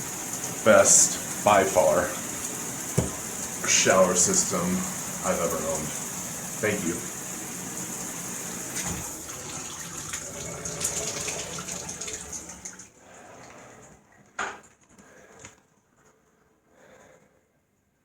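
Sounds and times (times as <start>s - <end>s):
water spraying from shower head: 0.0s - 9.5s
sharp knock: 3.0s - 3.2s.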